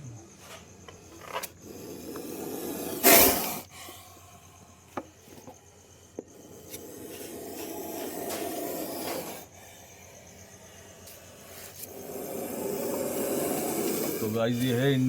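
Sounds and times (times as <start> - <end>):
snake hissing: 1.0 - 4.9, 5.6 - 15.0.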